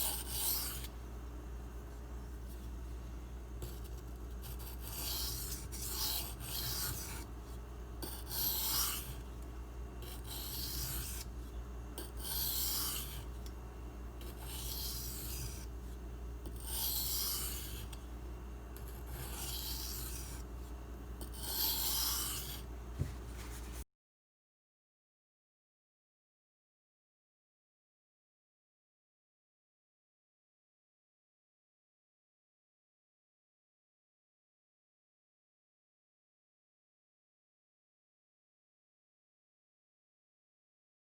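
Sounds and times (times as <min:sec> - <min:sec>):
knife scraping on whetstone: 0:00.0 - 0:01.0, 0:03.6 - 0:13.5, 0:14.2 - 0:18.0, 0:18.8 - 0:23.8.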